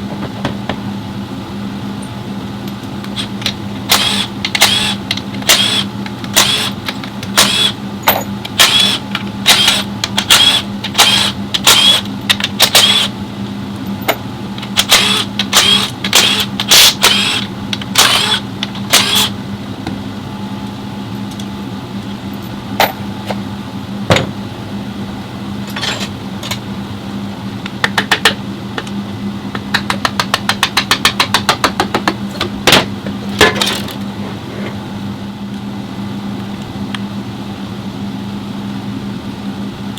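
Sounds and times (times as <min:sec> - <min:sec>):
steady hum: 0:00.0 - 0:39.9
metal tools clanking: 0:25.6 - 0:26.6.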